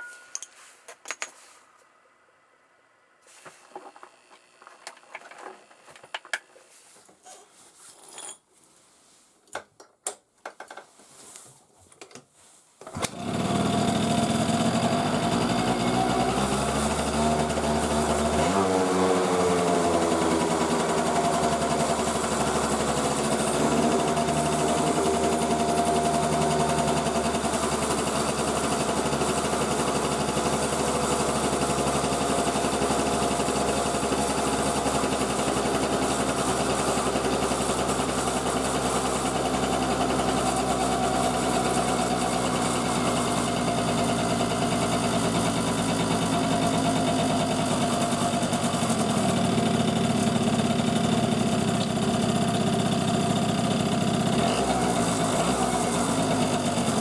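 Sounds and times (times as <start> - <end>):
motorcycle engine idling: 20.4 - 54.4.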